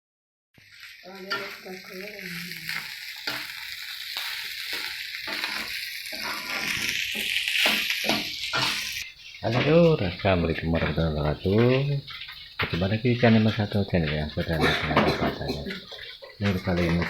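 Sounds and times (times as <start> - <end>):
rice sizzling in a hot pan: 0.6 - 17.0
spatula knocking and scraping pan: 4.7 - 17.0.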